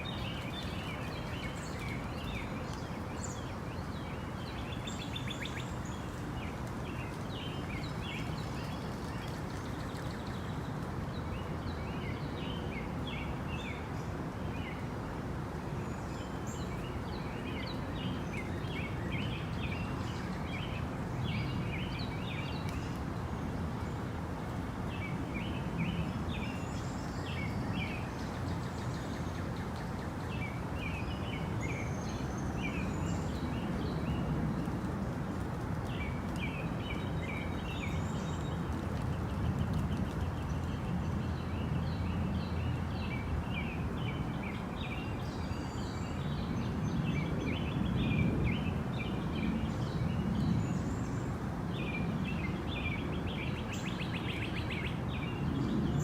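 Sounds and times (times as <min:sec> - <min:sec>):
steady rush of background noise: 0:00.0 - 0:56.0.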